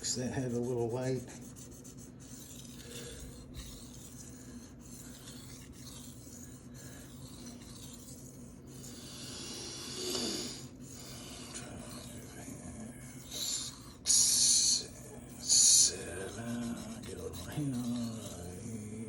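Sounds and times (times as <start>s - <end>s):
knife scraping on whetstone: 0.0s - 8.9s, 15.5s - 18.8s.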